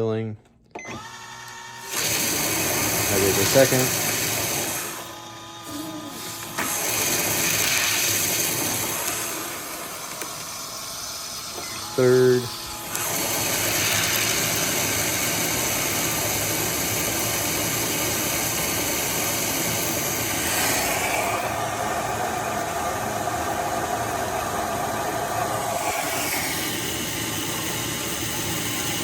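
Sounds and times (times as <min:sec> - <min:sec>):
water rushing through valve: 0:17.7 - 0:22.8.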